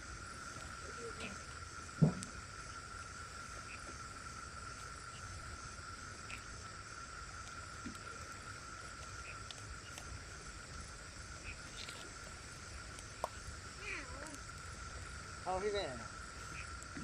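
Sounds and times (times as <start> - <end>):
high-pitched insect drone: 0.0 - 17.0
low background hiss: 0.0 - 17.0
faint ticks: 6.2 - 6.6, 7.2 - 15.2, 16.4 - 17.0.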